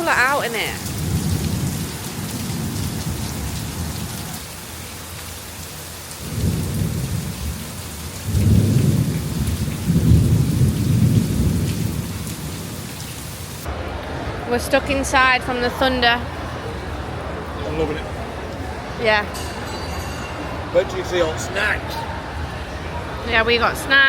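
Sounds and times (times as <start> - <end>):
rain falling: 0.0 - 24.0
thunder rolling: 0.6 - 4.2, 6.2 - 13.9.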